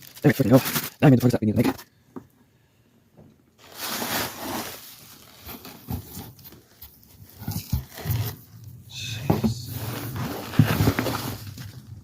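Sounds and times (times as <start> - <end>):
packing material rustling: 0.0 - 1.3, 3.6 - 8.7, 9.8 - 12.0.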